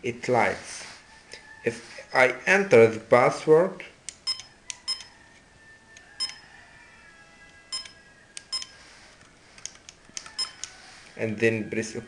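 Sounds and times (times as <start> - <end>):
keypad key presses beeping: 4.2 - 5.1, 6.2 - 6.4, 7.7 - 8.7, 10.3 - 10.7.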